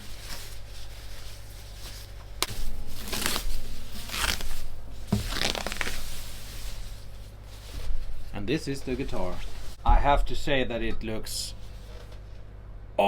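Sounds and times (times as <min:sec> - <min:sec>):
packing material crackling and tearing: 0:00.0 - 0:07.0.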